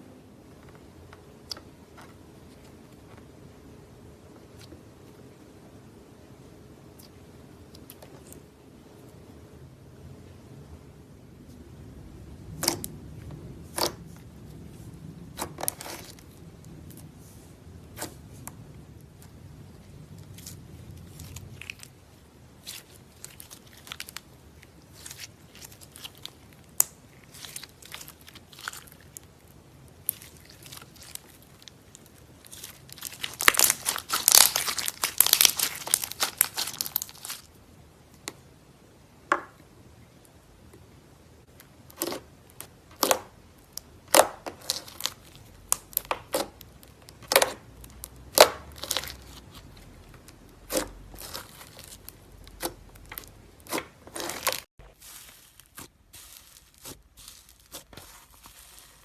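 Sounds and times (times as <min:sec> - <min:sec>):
slime popping and crackling: 0:22.6 - 0:37.5, 0:41.9 - 0:59.0.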